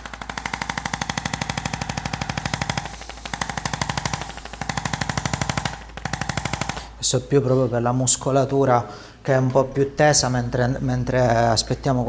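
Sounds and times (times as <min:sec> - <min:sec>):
percussion massager hammering: 0:00.0 - 0:07.6.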